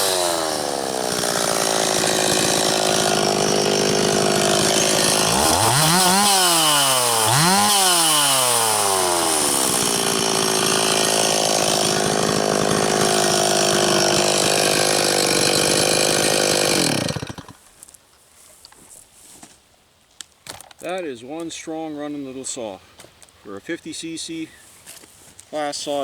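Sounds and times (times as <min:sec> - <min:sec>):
chainsaw idling: 0:00.0 - 0:17.6.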